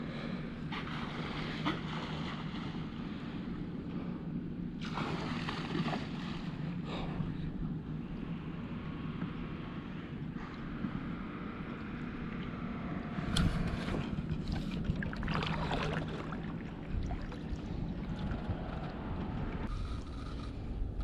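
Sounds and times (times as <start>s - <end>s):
dolphins splashing: 0.0s - 3.6s, 4.8s - 7.2s, 8.2s - 20.3s
steady wind: 0.0s - 21.0s
lapping water: 13.4s - 19.2s.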